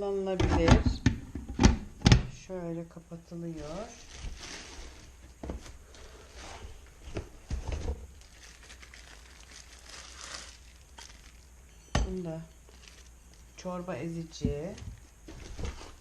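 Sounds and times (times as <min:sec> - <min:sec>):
plastic wrapping crinkling: 0:03.6 - 0:16.0.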